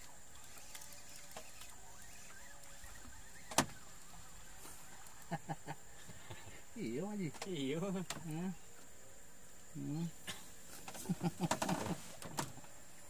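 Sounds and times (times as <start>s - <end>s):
high-pitched insect drone: 0.0s - 10.2s.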